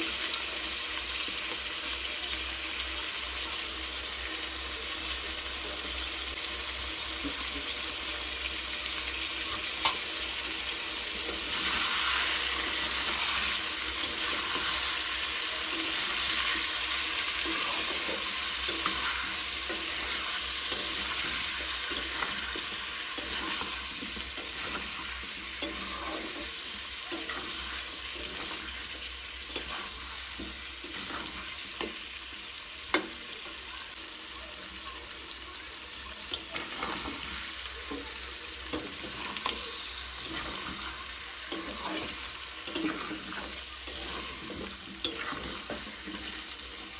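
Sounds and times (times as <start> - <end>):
curry sizzling in a pan: 0.0 - 46.9
utensil clicking against pan: 17.4 - 28.8, 32.9 - 33.2, 36.3 - 37.2, 37.8 - 46.4.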